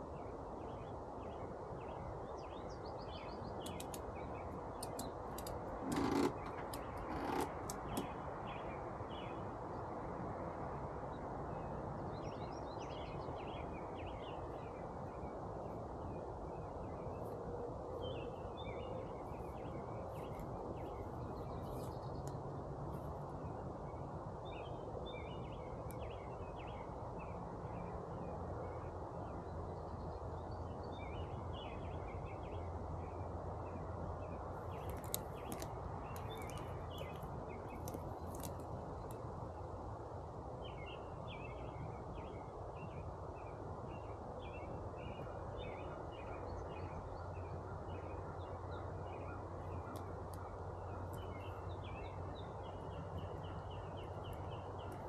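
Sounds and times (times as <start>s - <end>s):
songbirds chirping: 0.0s - 55.0s.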